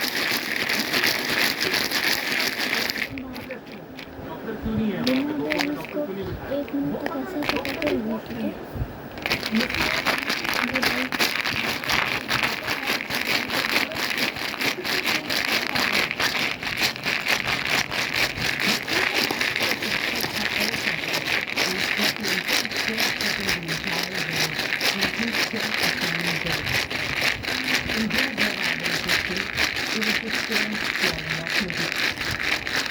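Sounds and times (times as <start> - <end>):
dense crackling and pattering: 0.0 - 32.9
faint voices: 0.0 - 32.9.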